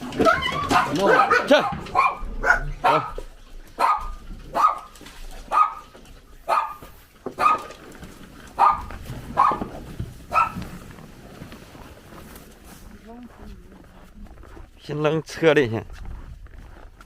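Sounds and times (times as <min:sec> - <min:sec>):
dog barking: 0:00.2 - 0:07.7, 0:08.6 - 0:09.7, 0:10.3 - 0:10.6.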